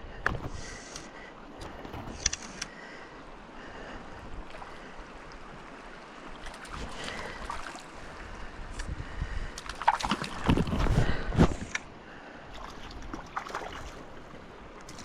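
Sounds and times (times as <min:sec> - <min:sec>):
creek water running: 0:00.0 - 0:15.0
light clicks: 0:00.2 - 0:02.8.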